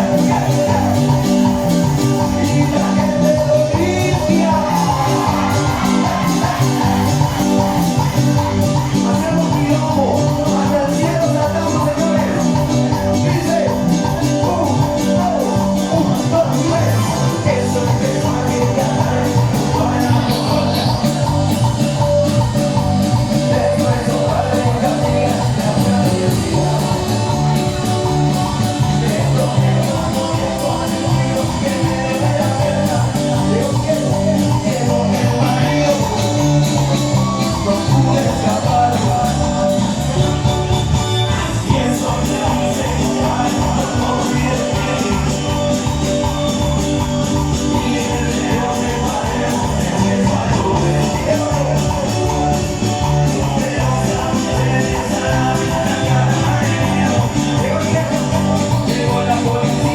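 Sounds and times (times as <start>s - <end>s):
bass guitar: 0.0s - 59.9s
guitar playing: 0.0s - 59.9s
live band music: 0.0s - 59.9s.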